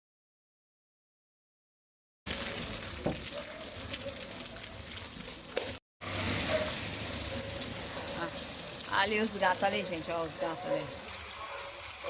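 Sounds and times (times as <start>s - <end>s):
heavy rain hissing: 6.0s - 12.0s.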